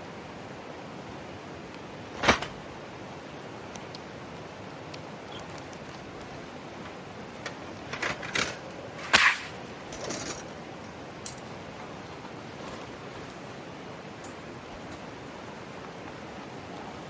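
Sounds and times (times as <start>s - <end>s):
mountain stream rushing: 0.0s - 17.0s.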